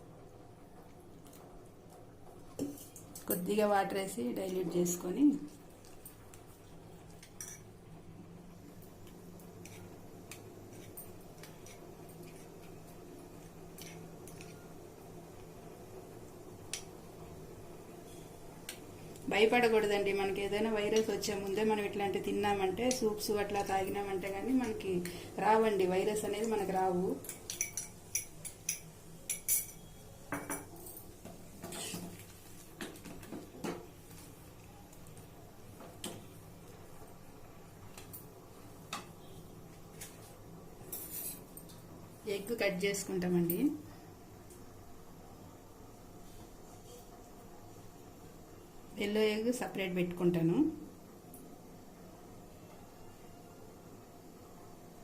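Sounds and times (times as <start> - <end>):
metal utensils clinking on pot: 7.2 - 7.7, 27.2 - 32.1.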